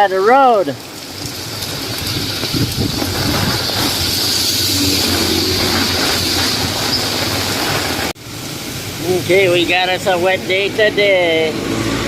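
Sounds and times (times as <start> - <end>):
tyres hissing on wet pavement: 0.0 - 12.0
vehicle engine hum: 0.8 - 12.0.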